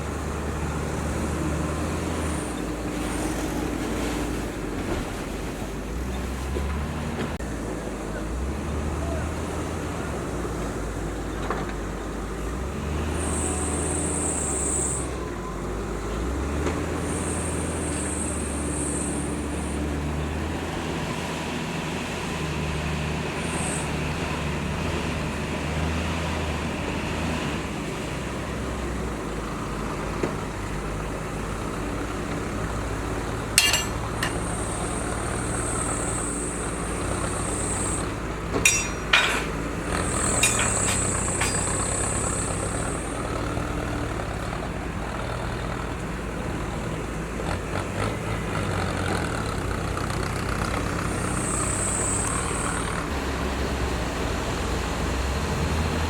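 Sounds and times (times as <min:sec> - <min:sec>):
diesel engines running: 0:00.0 - 0:56.0
sharp metal clanks: 0:33.6 - 0:34.5, 0:38.6 - 0:43.0.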